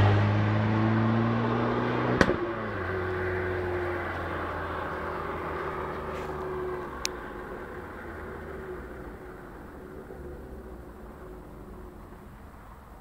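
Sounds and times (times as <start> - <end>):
car engine running: 0.0 - 13.0
exhaust pop: 2.0 - 2.9.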